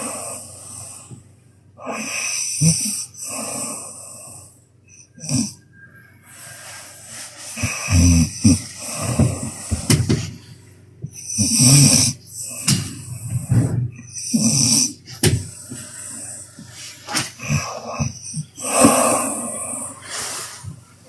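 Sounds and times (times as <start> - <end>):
woman snoring loudly: 1.8 - 4.5, 5.2 - 5.6, 7.6 - 10.2, 11.2 - 20.6.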